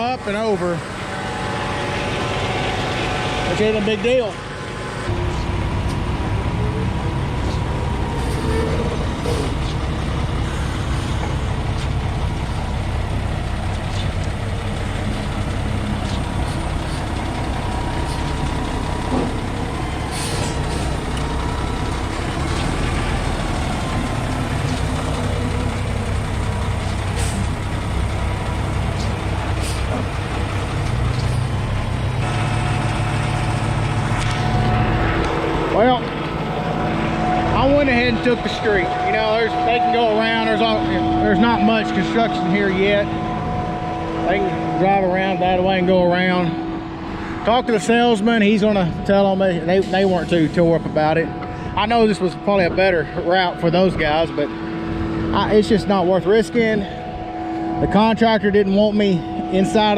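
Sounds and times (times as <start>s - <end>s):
diesel truck engine running: 0.0s - 59.9s.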